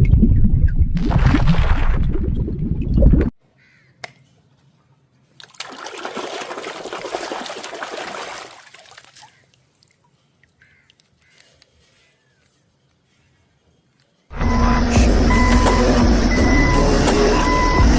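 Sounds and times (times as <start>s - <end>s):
water splashing: 0.9s - 3.3s, 5.4s - 11.2s
stream of running water: 5.6s - 10.4s.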